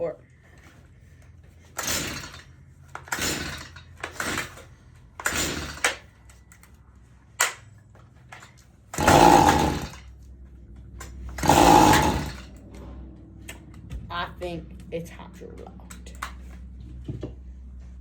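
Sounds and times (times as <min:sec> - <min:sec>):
recoil starter cord pulls: 0:01.7 - 0:06.8, 0:08.3 - 0:10.1, 0:11.0 - 0:12.6.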